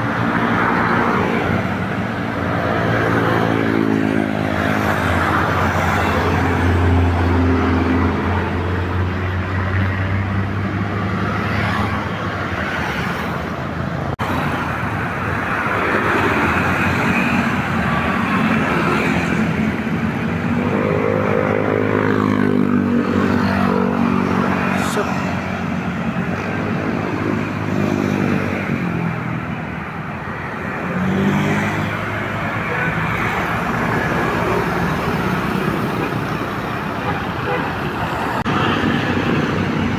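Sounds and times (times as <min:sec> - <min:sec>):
buses passing with engines running: 0:00.0 - 0:39.9.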